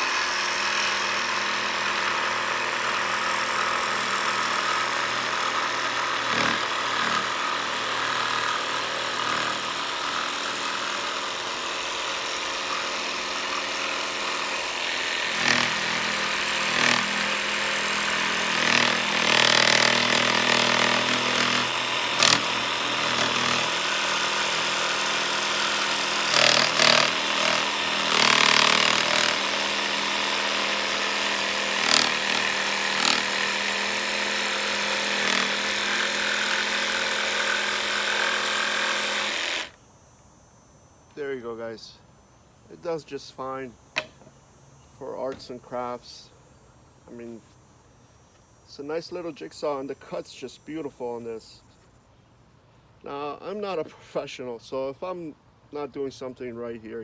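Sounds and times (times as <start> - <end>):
jigsaw cutting wood: 0.0 - 39.8.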